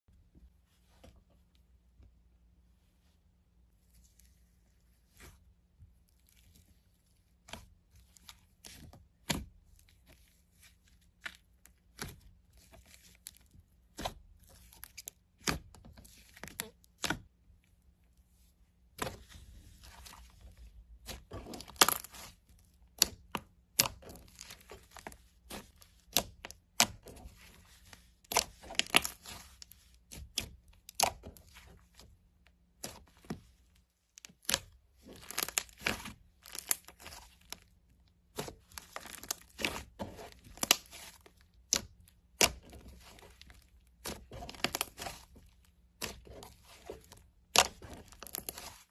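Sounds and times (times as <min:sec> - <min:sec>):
slime tearing: 0:20.9 - 0:32.0, 0:34.2 - 0:48.9
slime crackling and popping: 0:21.0 - 0:31.8, 0:34.2 - 0:48.9.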